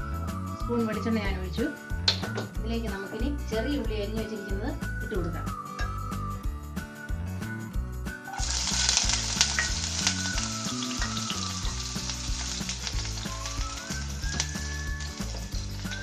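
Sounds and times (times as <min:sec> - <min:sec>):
shallots sizzling in hot oil: 0:08.3 - 0:16.0.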